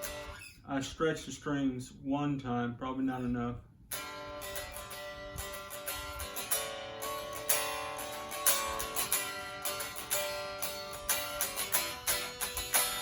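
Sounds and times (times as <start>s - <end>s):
unplugged electric guitar strumming: 0.0s - 0.6s, 3.9s - 13.0s.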